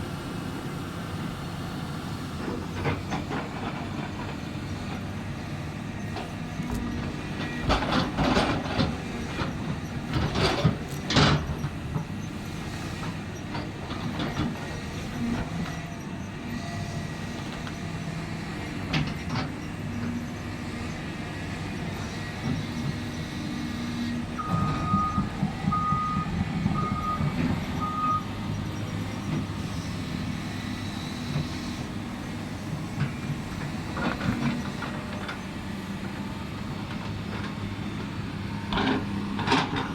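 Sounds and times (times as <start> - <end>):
excavator diesel engine running: 0.0 - 39.9
reversing alarm beeping: 24.4 - 29.4.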